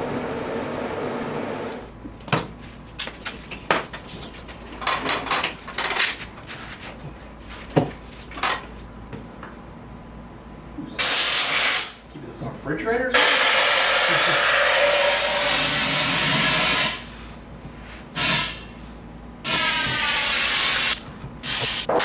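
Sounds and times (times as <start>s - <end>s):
loud hiss: 13.2s - 17.1s, 19.5s - 21.9s.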